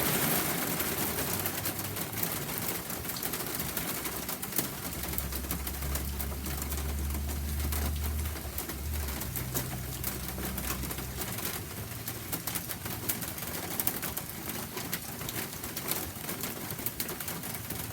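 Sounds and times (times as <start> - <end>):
rain falling: 0.0 - 17.9
low steady tone: 4.8 - 12.0.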